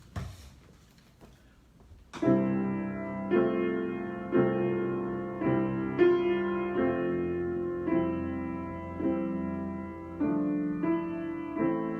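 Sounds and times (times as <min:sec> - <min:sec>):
slow piano chords: 0:02.1 - 0:11.9.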